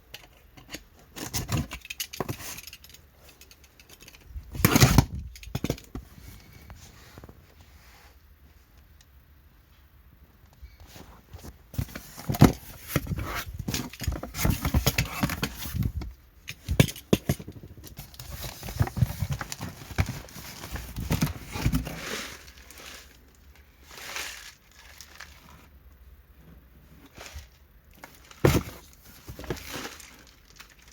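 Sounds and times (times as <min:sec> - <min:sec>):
packages knocking and thumping: 0:11.4 - 0:22.0, 0:28.0 - 0:30.3
packaging rustle: 0:16.9 - 0:25.7, 0:27.1 - 0:30.9
packaging crinkling: 0:27.2 - 0:30.9.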